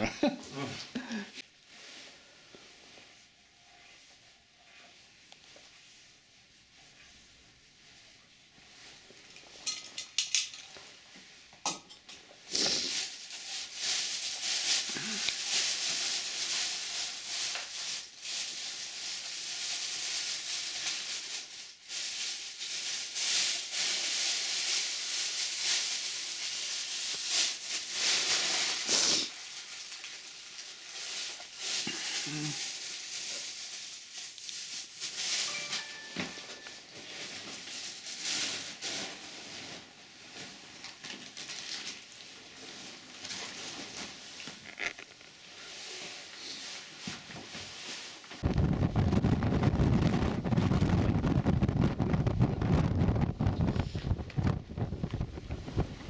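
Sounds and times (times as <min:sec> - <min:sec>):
strong wind gusts: 0:48.4 - 0:56.0.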